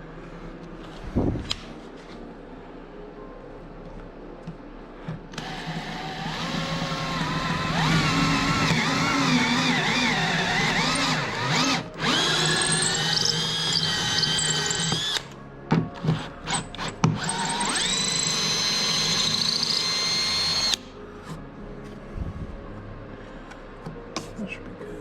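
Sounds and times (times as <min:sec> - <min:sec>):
electric drill whining: 0:05.4 - 0:15.3, 0:16.0 - 0:20.8.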